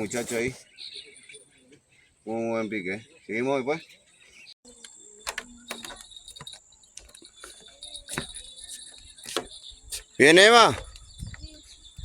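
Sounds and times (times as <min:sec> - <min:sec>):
light clicks and knocks: 0:05.2 - 0:08.4.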